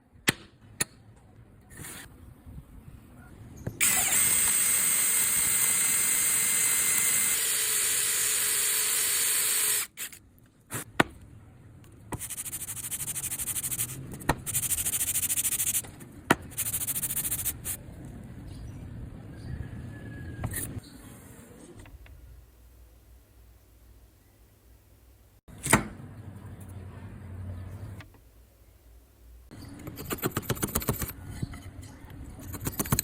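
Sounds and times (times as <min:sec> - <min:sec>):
high-pitched power tool running: 0:03.8 - 0:09.9.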